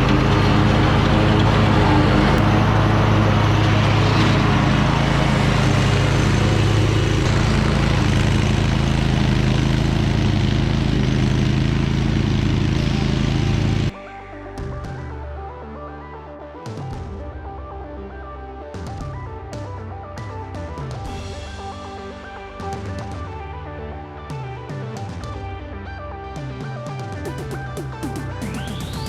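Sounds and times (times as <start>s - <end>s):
mower engine running: 0.0s - 14.0s
quiet background music: 12.9s - 29.0s.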